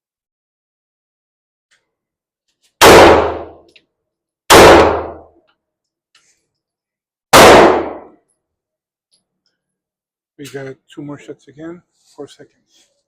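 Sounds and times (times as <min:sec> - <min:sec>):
pistol shots: 0:02.8 - 0:03.6, 0:04.5 - 0:05.3, 0:07.3 - 0:08.2.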